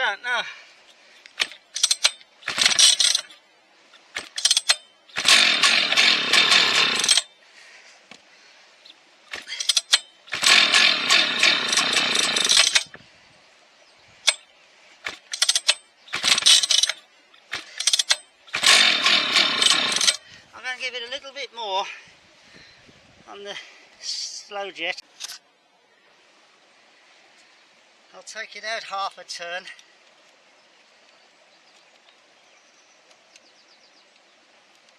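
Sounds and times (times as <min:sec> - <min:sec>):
chainsaw being pull-started: 0:01.3 - 0:03.4, 0:04.0 - 0:07.3, 0:09.3 - 0:13.0, 0:14.2 - 0:14.4, 0:15.0 - 0:20.3
chainsaw engine running: 0:01.4 - 0:03.3, 0:04.0 - 0:07.3, 0:09.3 - 0:13.0, 0:15.0 - 0:20.4.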